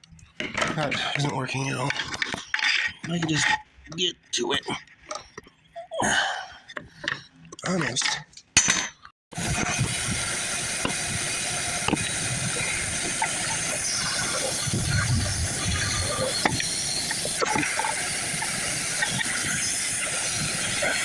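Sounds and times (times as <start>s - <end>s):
hissing flow through a hose: 9.4s - 21.0s.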